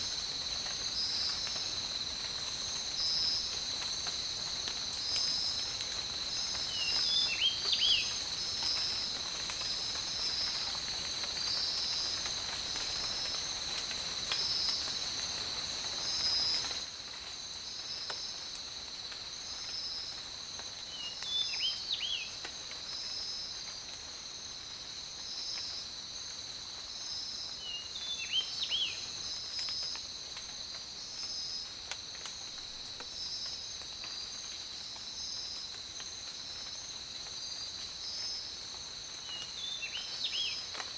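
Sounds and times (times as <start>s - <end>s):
high-pitched insect chorus: 0.0s - 40.9s
songbird singing: 6.7s - 8.3s, 20.9s - 22.3s, 27.6s - 29.1s, 39.2s - 40.8s.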